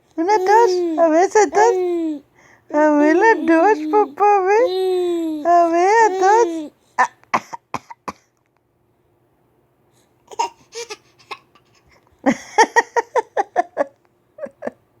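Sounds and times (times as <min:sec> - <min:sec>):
boy laughing: 0:12.3 - 0:14.8.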